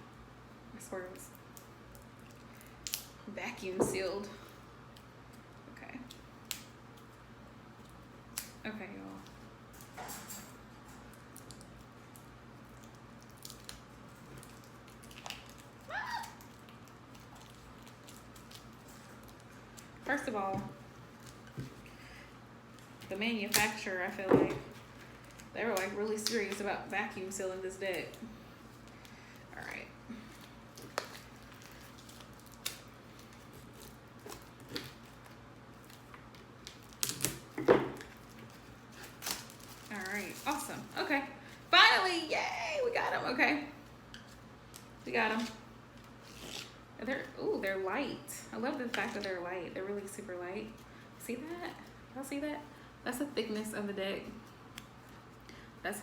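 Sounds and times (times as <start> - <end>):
plastic shrink-wrap crinkling: 11.0 - 20.3, 28.7 - 41.1.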